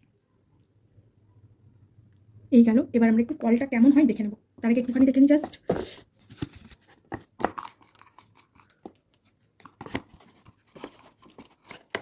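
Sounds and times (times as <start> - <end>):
handling clicks and rustles: 4.7 - 12.0.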